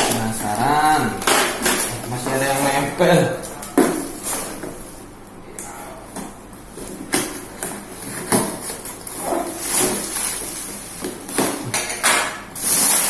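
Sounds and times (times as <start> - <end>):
packaging rustling: 6.8 - 11.5.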